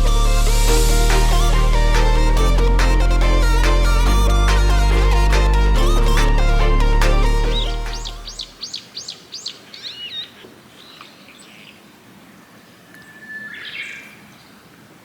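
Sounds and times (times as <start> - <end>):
background music: 0.0 - 8.6
bird chirping: 7.1 - 11.9, 12.7 - 14.6.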